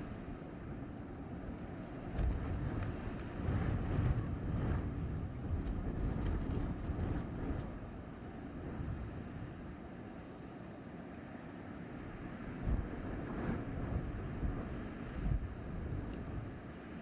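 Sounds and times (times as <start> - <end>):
blizzard wind gusting: 0.0 - 17.0
faint ticks: 15.1 - 16.3.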